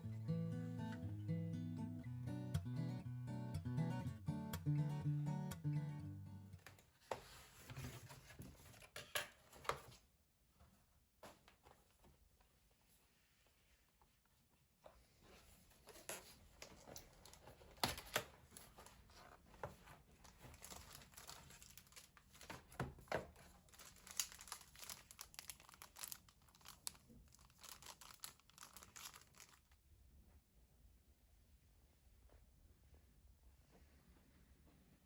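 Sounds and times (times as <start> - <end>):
crinkling and rustling: 6.6 - 29.8.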